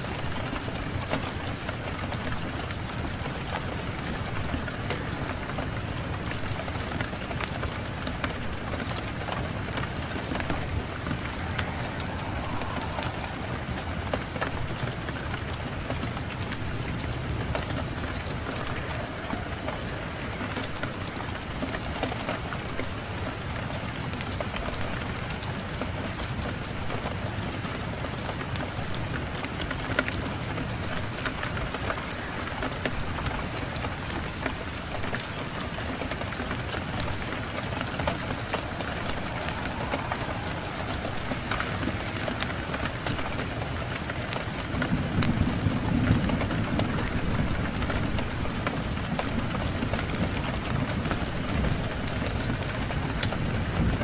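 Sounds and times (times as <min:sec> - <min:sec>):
wood fire crackling: 0:00.0 - 0:22.8, 0:31.3 - 0:53.8
wind rushing: 0:02.5 - 0:17.2, 0:36.8 - 0:47.9.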